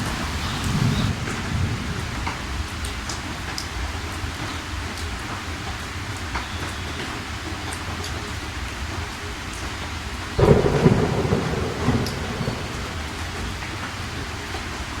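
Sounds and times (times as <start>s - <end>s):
thunder clap rumbling: 0.0s - 2.9s, 10.4s - 15.0s
steady rain: 0.0s - 15.0s.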